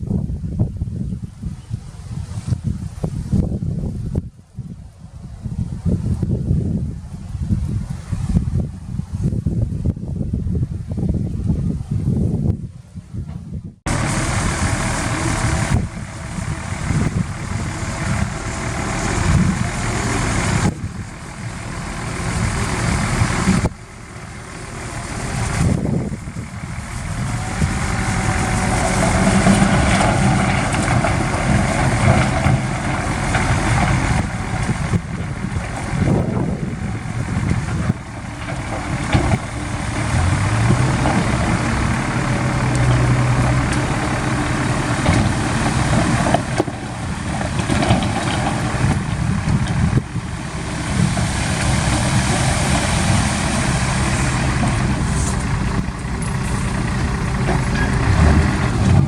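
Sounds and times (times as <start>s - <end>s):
heavy diesel engines running: 13.2s - 59.0s.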